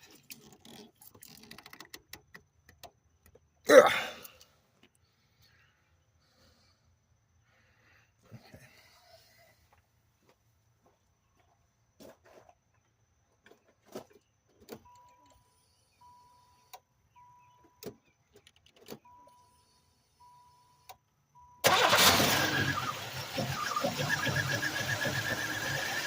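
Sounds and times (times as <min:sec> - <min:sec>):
car engine starting and running: 0:21.4 - 0:26.0.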